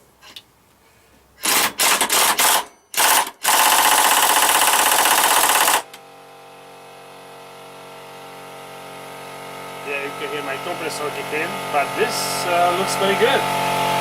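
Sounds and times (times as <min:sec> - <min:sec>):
air compressor humming: 0:01.3 - 0:14.0
pneumatic impact wrench hammering: 0:01.4 - 0:06.0.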